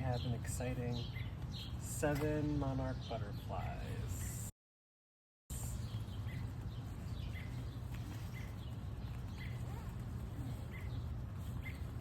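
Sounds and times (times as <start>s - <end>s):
bird chirping: 0.0s - 4.4s, 5.6s - 12.0s
low outdoor rumble: 5.5s - 12.0s.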